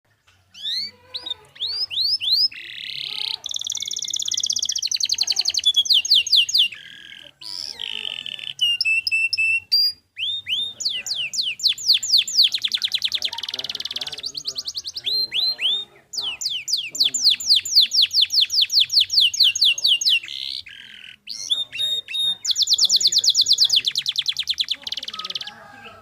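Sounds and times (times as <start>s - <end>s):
canary singing: 0.1s - 26.0s.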